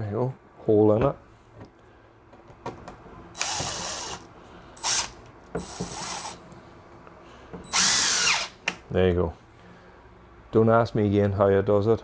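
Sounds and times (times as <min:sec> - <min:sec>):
cordless drill driving screw: 0:03.4 - 0:06.4, 0:07.7 - 0:08.8.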